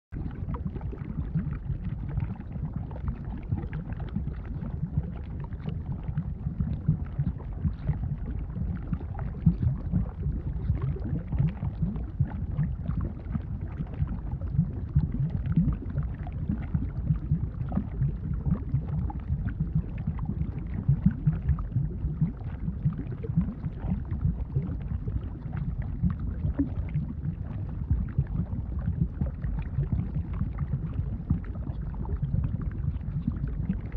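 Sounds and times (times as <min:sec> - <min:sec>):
faint crackle: 0:00.1 - 0:33.9
thick lava bubbling: 0:00.2 - 0:33.9.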